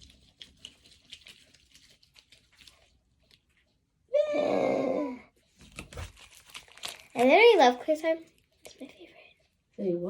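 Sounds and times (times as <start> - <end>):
slime crackling and popping: 5.7 - 8.9.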